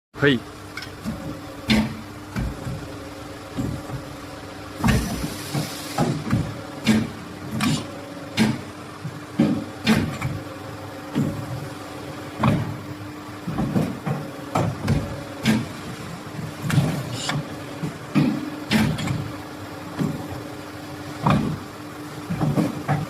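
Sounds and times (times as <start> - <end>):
machine motor hum: 0.4 - 23.0
machine clunks and knocks: 0.8 - 2.9, 3.5 - 4.1, 4.8 - 10.4, 11.1 - 11.6, 12.3 - 12.8, 13.4 - 15.8, 16.4 - 19.3, 19.9 - 20.4, 21.2 - 23.0.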